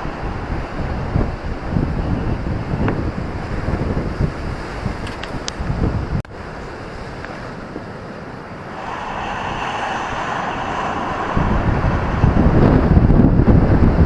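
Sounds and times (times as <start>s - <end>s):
wind buffeting microphone: 0.0s - 14.0s
ocean waves washing onto beach: 6.3s - 14.0s.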